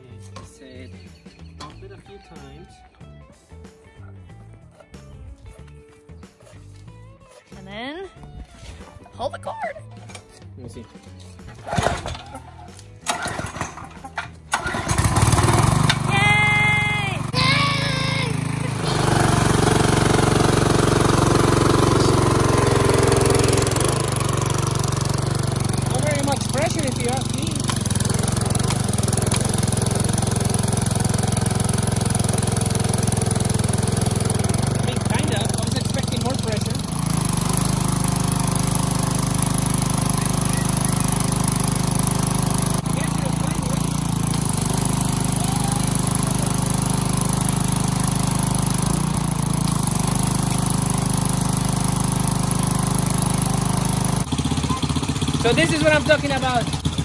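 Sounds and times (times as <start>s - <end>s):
pressure washer engine running: 13.0s - 57.0s.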